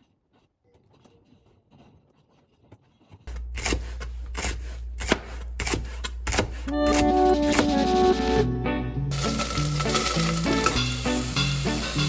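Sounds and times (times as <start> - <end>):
low hum: 3.3 - 11.6.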